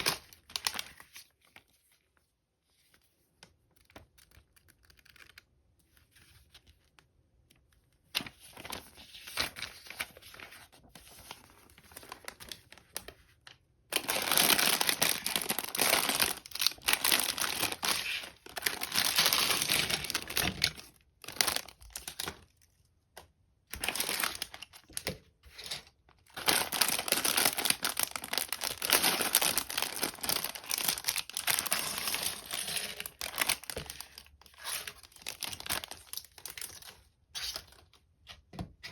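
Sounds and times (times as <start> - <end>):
plastic bags crinkling: 11.5 - 22.5, 23.7 - 37.0.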